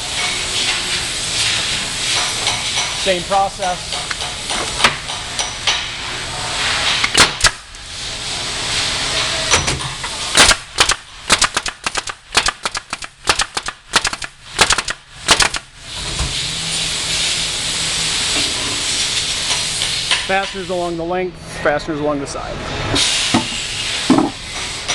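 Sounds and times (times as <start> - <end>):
nail gun shots: 7.0 - 7.7, 10.4 - 15.7
sharp clacks: 10.4 - 15.6
air hissing: 23.0 - 24.9.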